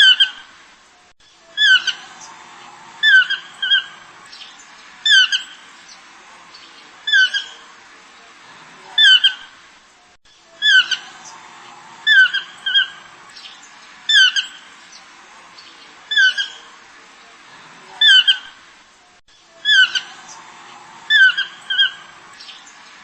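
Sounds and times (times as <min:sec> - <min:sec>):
high-pitched animal calls: 0:01.5 - 0:02.3, 0:03.0 - 0:04.0, 0:07.1 - 0:07.6, 0:09.0 - 0:09.5, 0:10.6 - 0:11.4, 0:12.0 - 0:13.1, 0:14.1 - 0:14.6, 0:16.1 - 0:16.6, 0:18.0 - 0:18.6, 0:19.6 - 0:20.4, 0:21.1 - 0:22.2.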